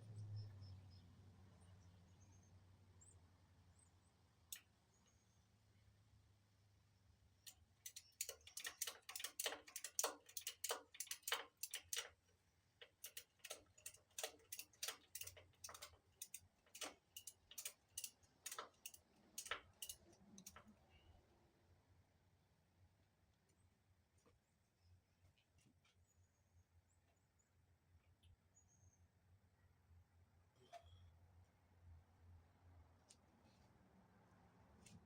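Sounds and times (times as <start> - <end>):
sharp clicks: 7.4 - 12.2, 12.8 - 20.7.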